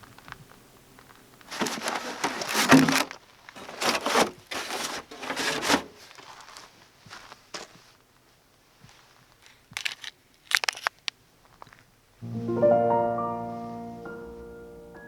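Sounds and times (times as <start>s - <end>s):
tent fabric rustling: 1.4s - 7.9s.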